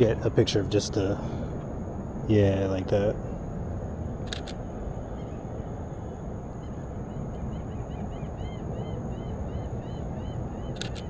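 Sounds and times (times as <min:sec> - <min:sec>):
steady low rumble: 0:00.0 - 0:11.0
camera shutter click: 0:04.2 - 0:04.6, 0:10.8 - 0:11.0.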